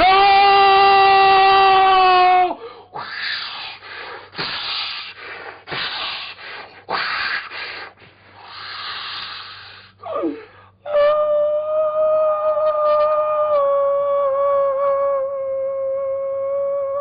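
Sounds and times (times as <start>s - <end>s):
person making falling cry: 0.0s - 2.6s, 10.0s - 17.0s
person hissing and snorting: 2.9s - 10.5s.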